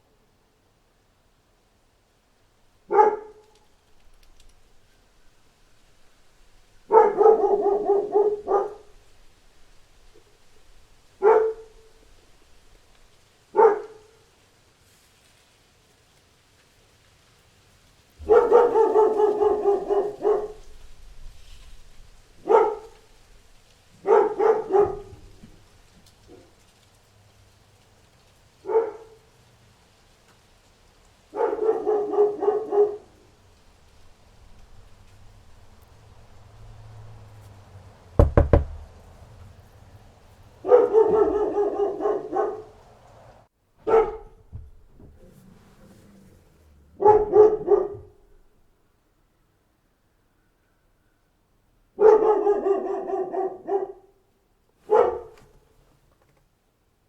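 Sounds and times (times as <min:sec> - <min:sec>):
dog barking: 0:02.9 - 0:03.6, 0:06.9 - 0:09.0, 0:11.2 - 0:12.0, 0:13.5 - 0:14.3, 0:18.2 - 0:20.8, 0:22.4 - 0:23.2, 0:24.0 - 0:25.5, 0:28.6 - 0:29.3, 0:31.3 - 0:33.2, 0:40.6 - 0:42.8, 0:43.8 - 0:44.5, 0:46.9 - 0:48.4, 0:52.0 - 0:54.2, 0:54.8 - 0:55.7
quick knocks: 0:38.2 - 0:38.8.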